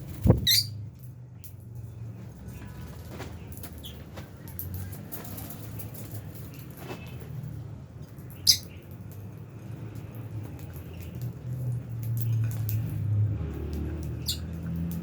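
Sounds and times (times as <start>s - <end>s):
clicks and rustles: 0.0s - 15.0s
birds chirping: 0.2s - 0.8s, 8.2s - 9.0s, 14.1s - 14.5s
loud shrill chirp: 0.4s - 0.7s, 8.4s - 8.7s.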